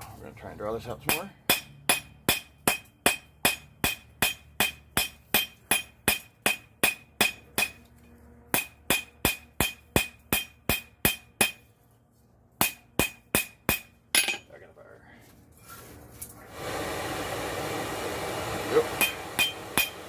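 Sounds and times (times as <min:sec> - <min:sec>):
hammer striking steel on anvil: 0:00.9 - 0:07.9, 0:08.5 - 0:11.7, 0:12.6 - 0:14.5, 0:19.0 - 0:20.0.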